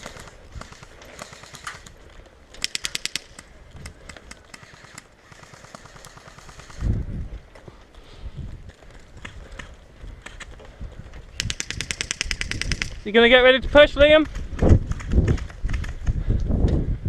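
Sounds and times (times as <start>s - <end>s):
airsoft guns firing: 0.0s - 1.9s, 2.6s - 6.9s, 11.4s - 13.4s.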